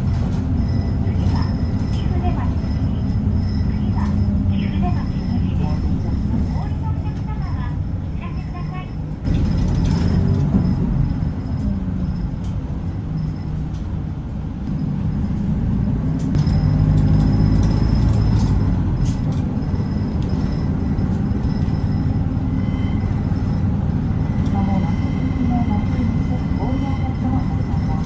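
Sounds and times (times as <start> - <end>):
bus diesel engine droning: 0.0 - 28.0.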